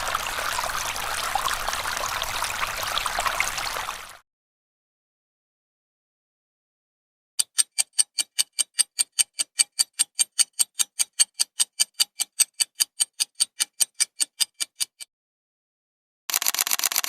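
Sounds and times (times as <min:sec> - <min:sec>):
fast clock-like ticking: 0:07.4 - 0:15.1, 0:16.3 - 0:17.0.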